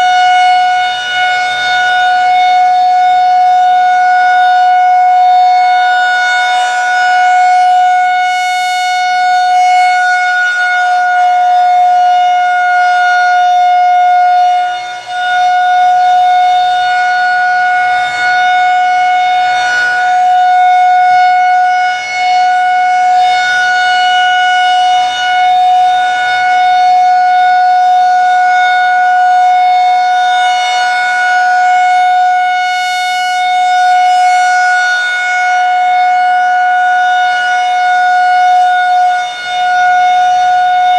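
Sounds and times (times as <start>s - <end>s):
outdoor warning siren steady tone: 0.0s - 40.9s.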